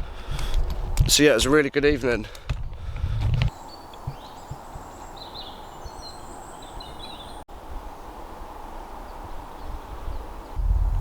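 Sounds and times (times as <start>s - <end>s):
outdoor background noise: 0.0s - 11.0s
birds chirping: 2.1s - 7.5s.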